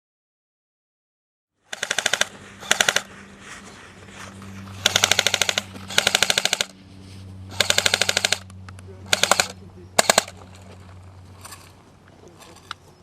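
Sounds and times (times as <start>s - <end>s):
airsoft guns firing bursts: 1.7s - 3.1s, 4.8s - 6.7s, 7.5s - 8.5s, 9.1s - 10.4s.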